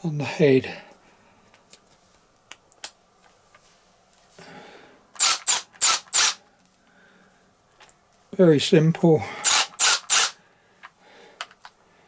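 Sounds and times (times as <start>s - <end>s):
cordless ratchet motor spinning: 5.2s - 6.4s, 9.4s - 10.4s
ratchet head clicks: 5.2s - 6.4s, 9.4s - 10.4s.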